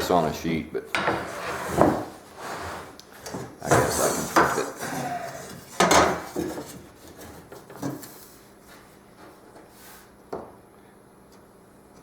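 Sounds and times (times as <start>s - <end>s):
board sliding and scraping: 1.1s - 4.6s.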